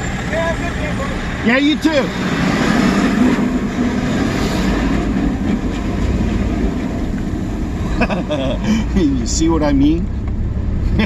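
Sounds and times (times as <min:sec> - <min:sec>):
diesel truck engine running: 0:00.0 - 0:11.0.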